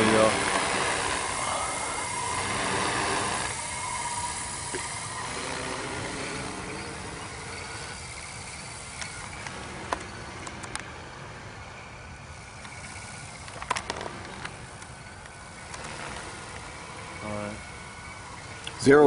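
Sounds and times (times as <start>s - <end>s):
drone motors and propellers humming: 0.0s - 19.0s
sharp clicks: 8.9s - 10.9s, 12.6s - 16.7s.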